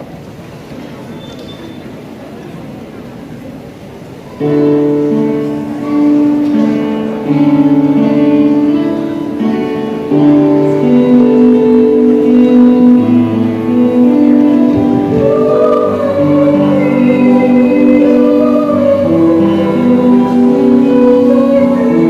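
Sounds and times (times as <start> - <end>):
instrumental accompaniment: 4.4 - 22.0
choir singing: 9.5 - 22.0.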